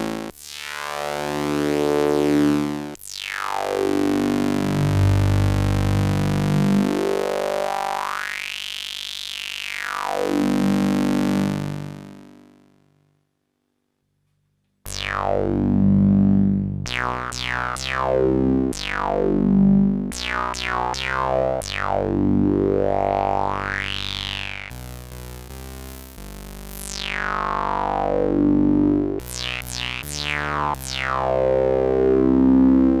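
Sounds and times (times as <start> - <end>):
synthesizer note with filter sweep: 3.5 - 8.6, 14.9 - 33.0
synthesizer note run: 4.0 - 7.8, 14.9 - 33.0.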